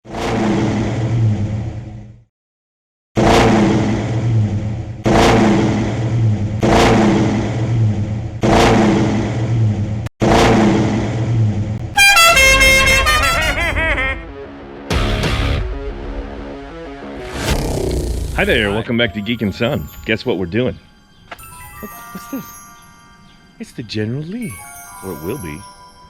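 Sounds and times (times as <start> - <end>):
car engine revving: 4.2 - 7.8.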